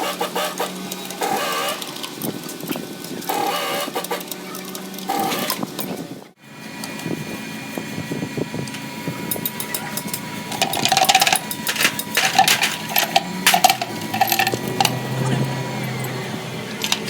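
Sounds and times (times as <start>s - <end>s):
hand tools clicking on metal: 8.7s - 15.2s, 16.0s - 17.0s.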